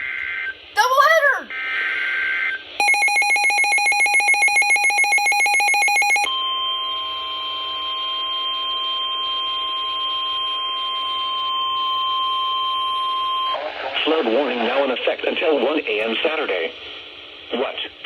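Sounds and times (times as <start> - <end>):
pulsing warbling alarm tone: 2.8 - 6.3
steady high-pitched alert tone: 2.8 - 6.3.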